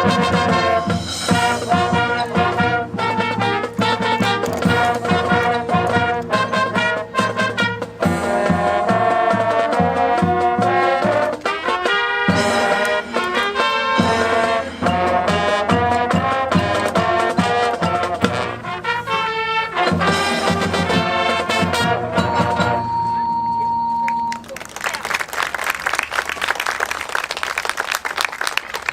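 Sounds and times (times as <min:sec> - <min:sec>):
marching band brass: 0:00.0 - 0:24.4
drumline percussion: 0:00.0 - 0:28.9.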